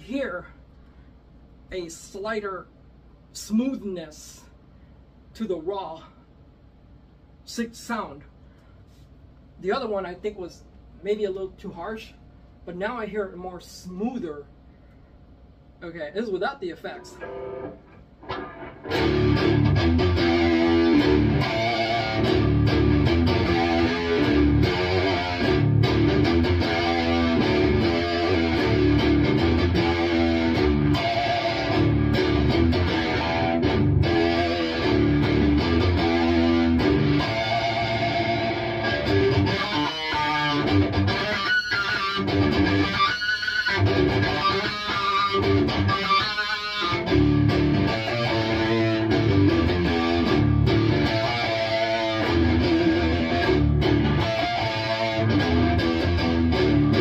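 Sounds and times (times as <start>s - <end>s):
distorted electric guitar riff: 16.9s - 57.0s.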